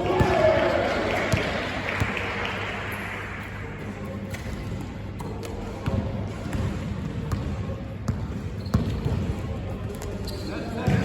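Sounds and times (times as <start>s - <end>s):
basketball bouncing on hard court: 8.1s - 9.3s.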